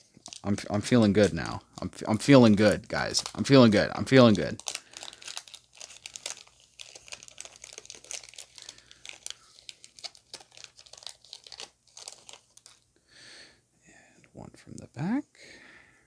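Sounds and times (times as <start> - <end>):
foil wrapper tearing and crinkling: 0.0 - 1.6, 2.4 - 12.8.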